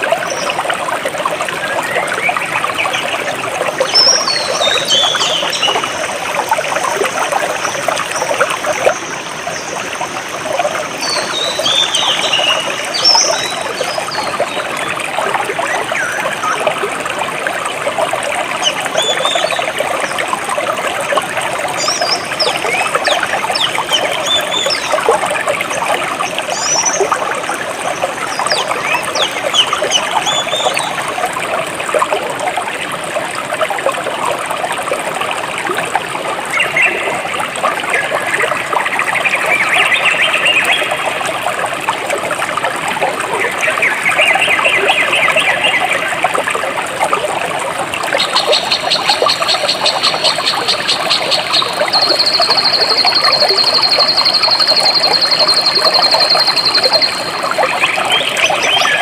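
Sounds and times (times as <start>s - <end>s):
stream trickling and babbling: 0.0s - 59.0s
birds chirping: 10.9s - 16.8s, 21.7s - 25.5s, 27.8s - 31.1s, 48.2s - 59.0s.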